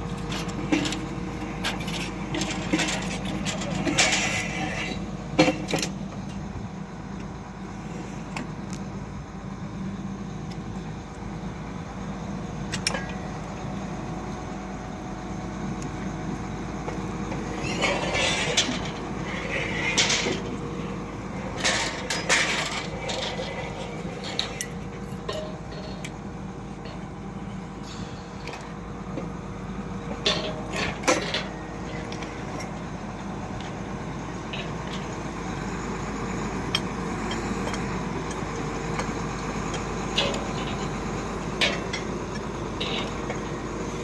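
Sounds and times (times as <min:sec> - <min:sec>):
drilling rig power unit running: 0:00.0 - 0:44.0
metallic clanks of steel rods: 0:00.3 - 0:05.9, 0:17.3 - 0:29.3, 0:30.1 - 0:32.8, 0:36.7 - 0:43.7.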